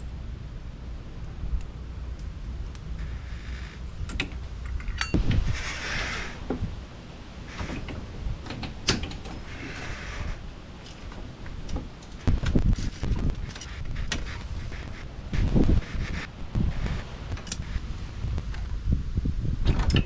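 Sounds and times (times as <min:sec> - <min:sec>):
metal scraping: 0:07.4 - 0:18.9.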